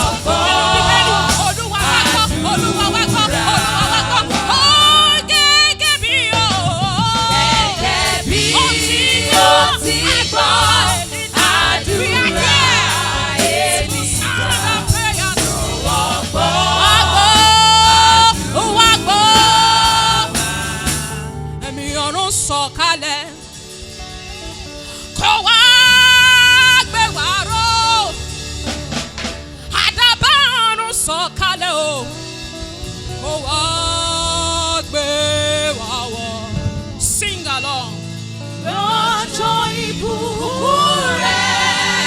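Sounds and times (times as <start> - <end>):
gospel voices singing: 0.0 - 23.4, 33.2 - 42.0
instrumental backing: 0.0 - 42.0.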